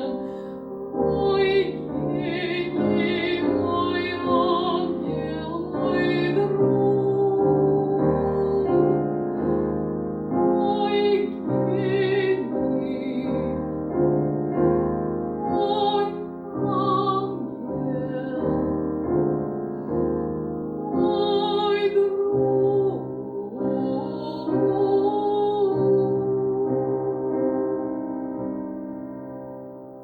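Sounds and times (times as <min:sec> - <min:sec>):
person singing operatically: 0:00.0 - 0:09.5, 0:15.5 - 0:18.7
classical piano chords: 0:00.0 - 0:30.0.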